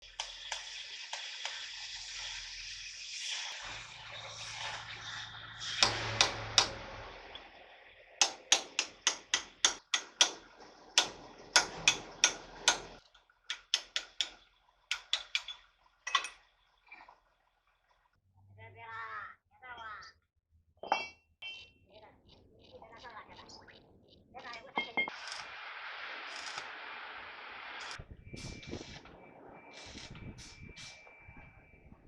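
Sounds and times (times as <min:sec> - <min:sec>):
hammer striking steel: 0:05.8 - 0:06.9, 0:08.2 - 0:10.4, 0:11.0 - 0:16.3.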